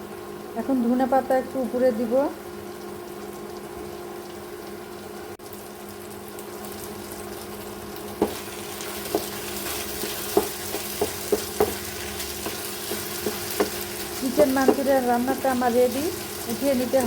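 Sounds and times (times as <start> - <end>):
food sizzling in a frying pan: 0.0 - 17.0
spatula knocking against pan: 9.1 - 9.4, 10.0 - 13.9, 14.6 - 15.0.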